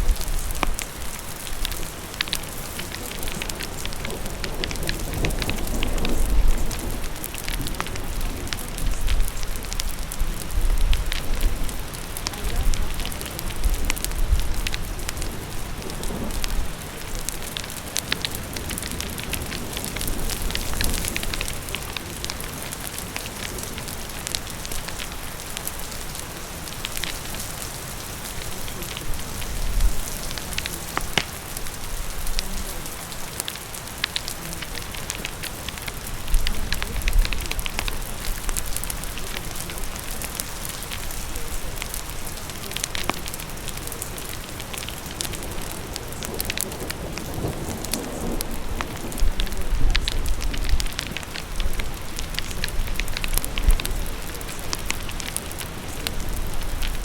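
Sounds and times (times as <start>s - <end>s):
crackling fire: 0.0s - 57.0s
steady rain hissing: 0.0s - 57.0s.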